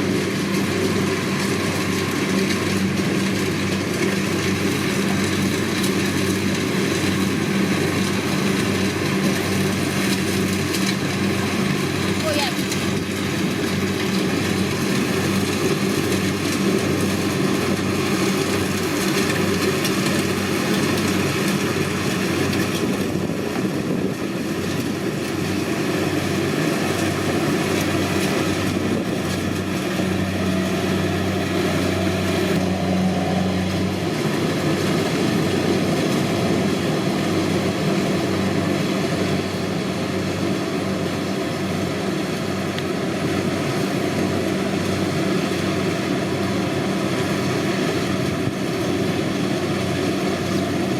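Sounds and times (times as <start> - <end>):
combine harvester engine running: 0.0 - 50.9.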